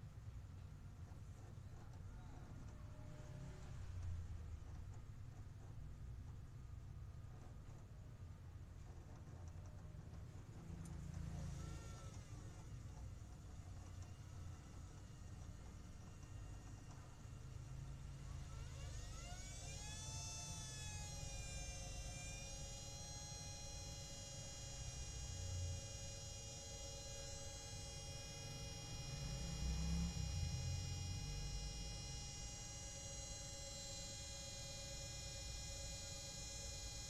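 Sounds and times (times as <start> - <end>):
washing machine motor whine: 8.9 - 37.0.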